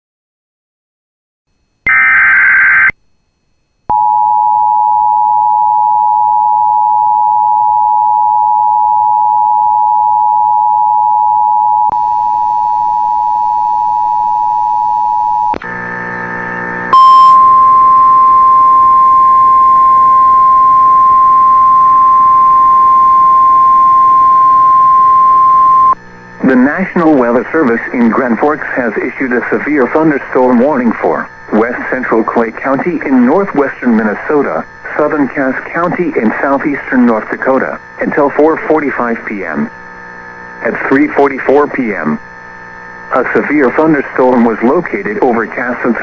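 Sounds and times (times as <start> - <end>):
two-tone attention signal: 16.9 - 26.0
steady alarm tone: 16.9 - 27.3.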